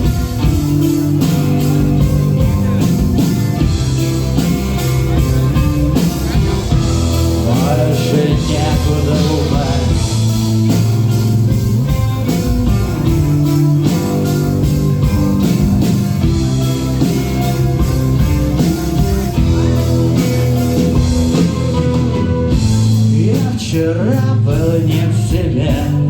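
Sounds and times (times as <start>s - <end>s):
rock band playing: 0.0s - 26.0s
person singing: 7.4s - 10.3s, 22.7s - 26.0s.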